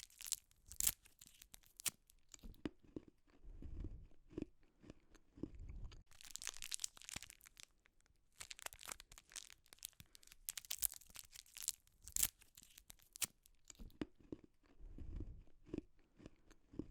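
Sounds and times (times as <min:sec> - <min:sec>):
candy wrapper crinkling: 0:00.0 - 0:02.6, 0:06.1 - 0:13.9
chewing: 0:00.0 - 0:16.9.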